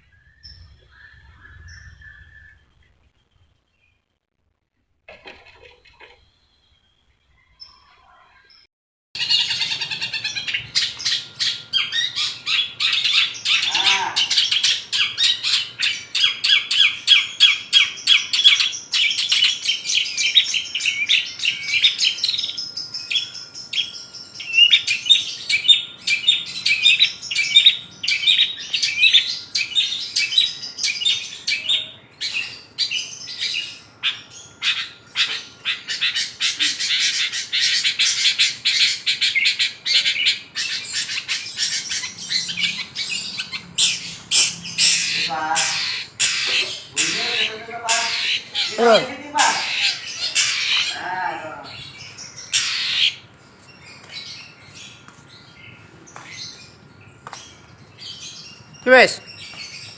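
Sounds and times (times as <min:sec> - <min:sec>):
shrike singing chirps and squawks: 0:00.0 - 0:02.9, 0:09.2 - 0:53.3.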